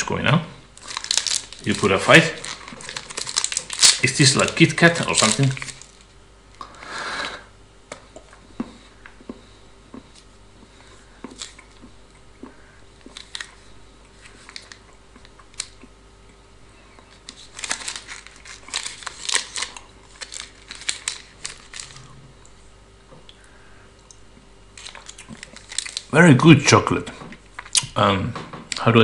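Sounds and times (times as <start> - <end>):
wrapper crinkling and tearing: 0.8 - 6.1, 13.1 - 13.6, 14.2 - 14.8, 17.3 - 22.2, 24.8 - 26.2.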